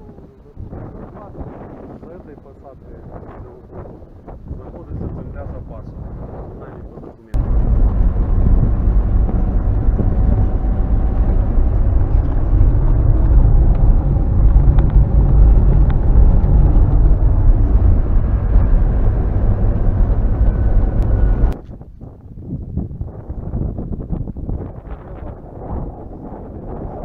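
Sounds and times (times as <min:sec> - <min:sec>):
car engine and road rumble: 0:07.4 - 0:21.6.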